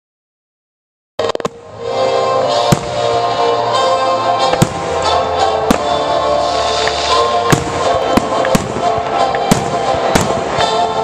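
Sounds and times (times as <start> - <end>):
music playing: 1.2 - 11.0
sharp firework bangs: 7.4 - 10.6.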